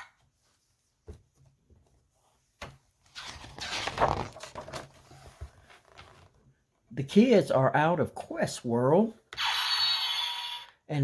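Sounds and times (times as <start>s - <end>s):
paper page turning: 3.0s - 6.4s.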